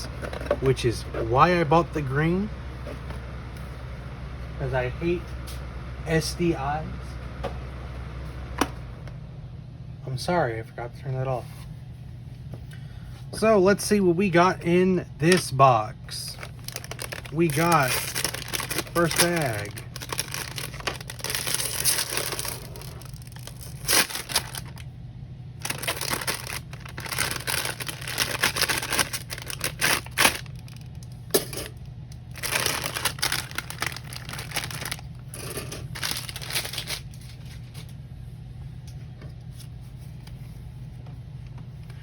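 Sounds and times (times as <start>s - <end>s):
steady low hum: 0.0s - 42.0s
plastic bag crinkling: 16.2s - 24.9s, 25.6s - 31.0s, 32.3s - 37.9s.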